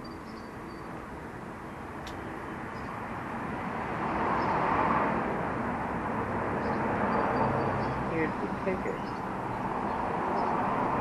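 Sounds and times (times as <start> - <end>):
passing vehicle rush: 2.9 - 11.0.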